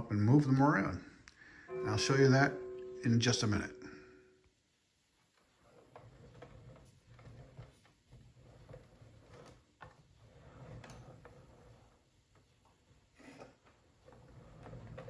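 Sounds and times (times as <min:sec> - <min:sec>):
low hum: 0:01.7 - 0:04.3.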